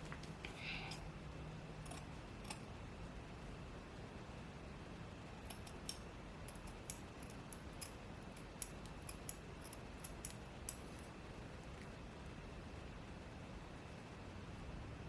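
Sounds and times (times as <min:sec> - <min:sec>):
scissors snipping: 0:01.8 - 0:02.7, 0:05.4 - 0:11.1.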